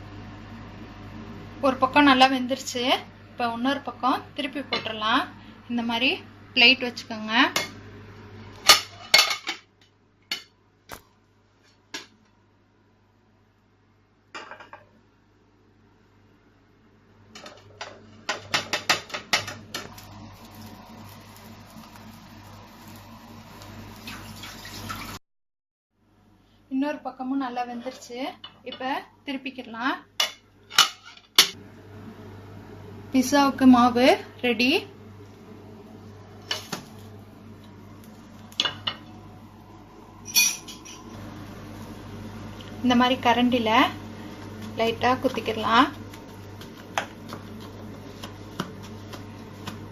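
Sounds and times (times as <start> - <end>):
dishes and utensils clinking: 40.3 - 41.1.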